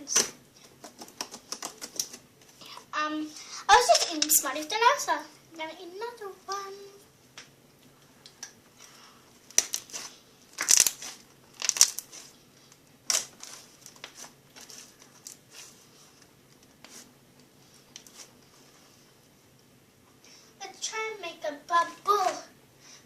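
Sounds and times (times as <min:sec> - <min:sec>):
crackling and crunching clicks: 0:09.5 - 0:15.4.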